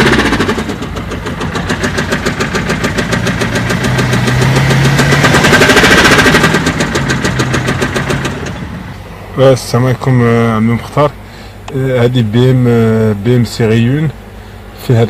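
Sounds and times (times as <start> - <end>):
car engine tapping knock: 0.0 - 8.6.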